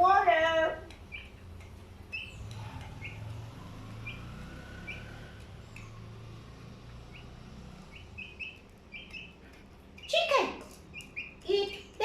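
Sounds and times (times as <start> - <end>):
chick peeping: 0.9 - 3.2, 7.1 - 12.0.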